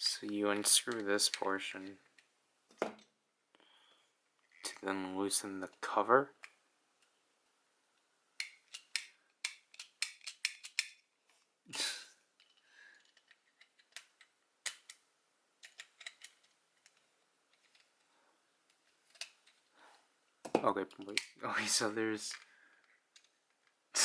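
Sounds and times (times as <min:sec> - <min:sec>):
plastic toy parts clicking: 0:08.4 - 0:11.0, 0:12.4 - 0:15.0, 0:15.6 - 0:18.0, 0:18.8 - 0:19.6, 0:22.3 - 0:23.8.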